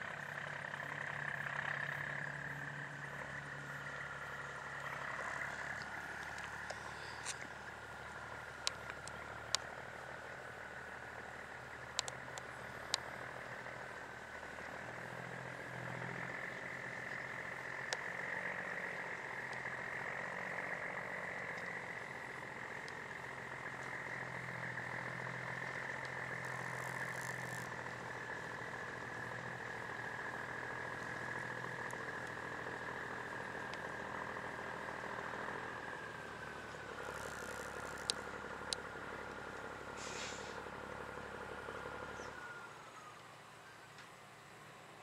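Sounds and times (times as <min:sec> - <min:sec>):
distant harvest machinery whine: 0:00.0 - 0:45.0
low hum: 0:00.0 - 0:45.0
sharp clicks: 0:11.9 - 0:13.1, 0:37.0 - 0:38.8.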